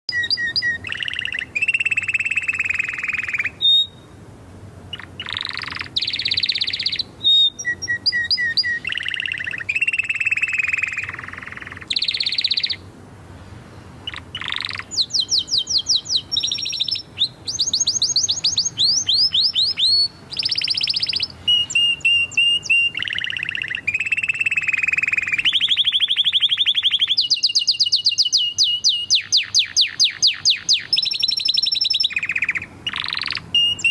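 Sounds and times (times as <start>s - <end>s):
canary singing trills: 0.1s - 4.2s, 4.9s - 12.9s, 13.6s - 33.9s.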